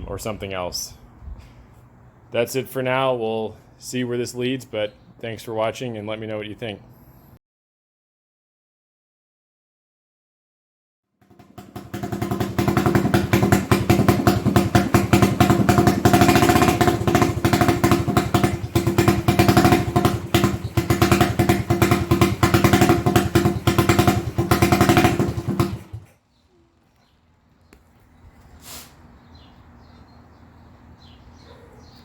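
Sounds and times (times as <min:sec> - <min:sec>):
motorcycle engine running: 0:11.2 - 0:26.1.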